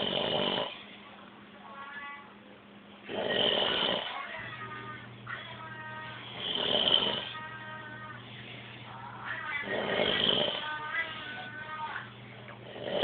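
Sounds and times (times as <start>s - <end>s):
loud snoring: 0.0s - 0.8s, 3.1s - 4.2s, 6.3s - 7.4s, 9.6s - 10.8s, 12.6s - 13.0s.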